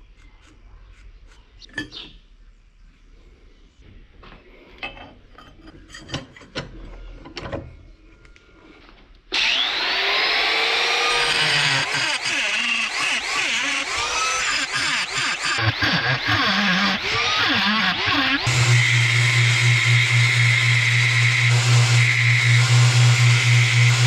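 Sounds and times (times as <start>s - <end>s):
power tool working material: 9.3s - 24.0s.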